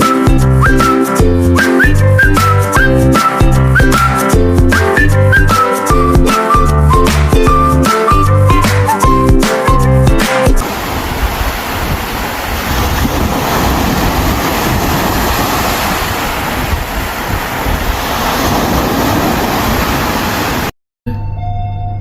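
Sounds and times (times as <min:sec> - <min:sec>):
surf rushing: 0:10.2 - 0:20.7
wind buffeting microphone: 0:10.6 - 0:20.7.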